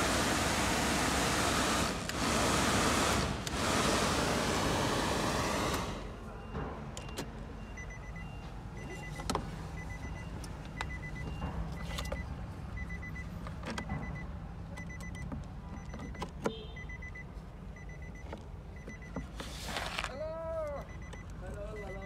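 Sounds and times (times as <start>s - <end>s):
electronic beeps: 6.1s - 13.2s, 20.8s - 22.0s.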